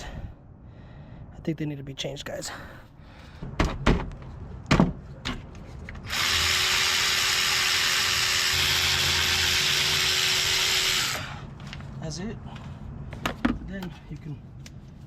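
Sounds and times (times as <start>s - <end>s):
cordless drill whirring: 6.0s - 11.5s.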